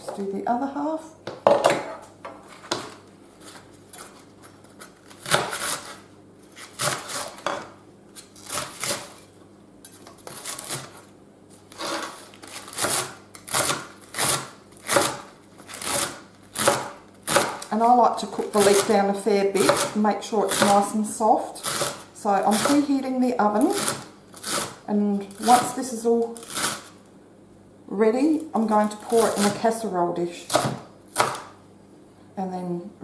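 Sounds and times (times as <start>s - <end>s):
knife chopping on cutting board: 5.2s - 6.0s, 6.7s - 7.7s, 8.4s - 9.2s, 11.7s - 17.7s, 19.6s - 20.8s, 30.5s - 31.6s.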